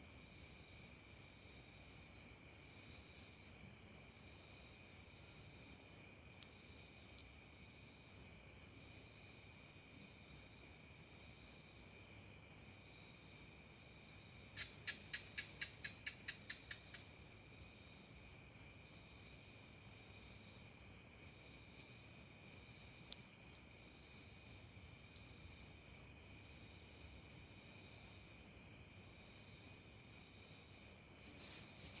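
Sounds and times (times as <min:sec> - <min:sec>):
crickets chirping: 0:00.0 - 0:32.0.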